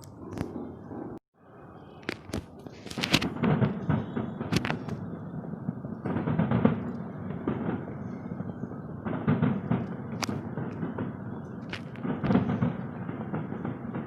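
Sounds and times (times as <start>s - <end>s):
firework bangs: 2.1s - 14.0s
fireworks crackling: 2.1s - 14.0s.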